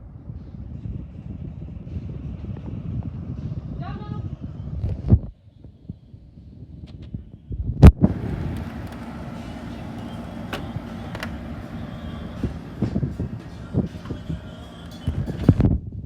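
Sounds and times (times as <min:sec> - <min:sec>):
clicks: 0:07.9 - 0:15.5
air conditioner humming: 0:07.9 - 0:15.6.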